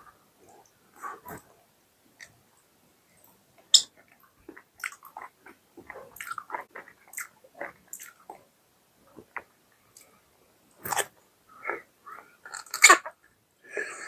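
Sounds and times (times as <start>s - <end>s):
mouth clicks and smacks: 3.8s - 8.4s.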